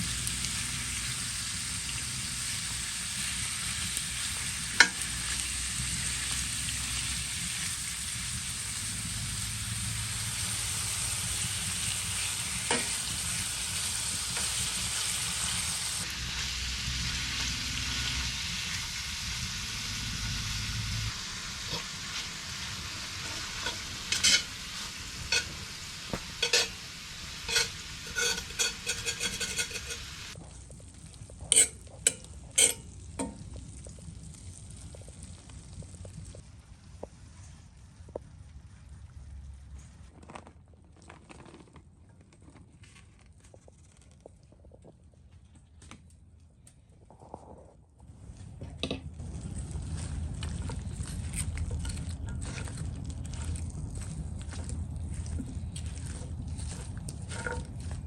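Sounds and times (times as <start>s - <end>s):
food sizzling in a frying pan: 0.0s - 36.4s, 49.2s - 58.0s
utensil clacking against pan: 23.1s - 26.8s, 27.4s - 30.2s.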